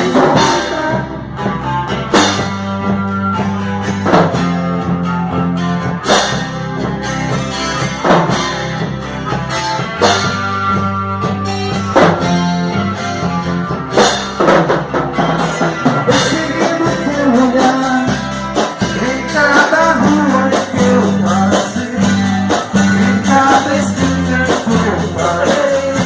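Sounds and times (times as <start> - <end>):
instrumental rock band music: 0.0 - 26.0
strong drum accents: 0.0 - 26.0.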